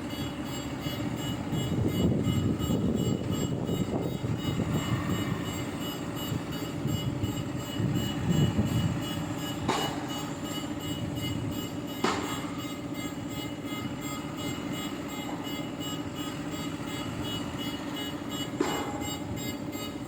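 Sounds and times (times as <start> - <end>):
diesel engine rumbling: 0.0 - 20.0
sharp metallic knock: 9.6 - 10.3, 12.0 - 12.6, 18.6 - 19.3.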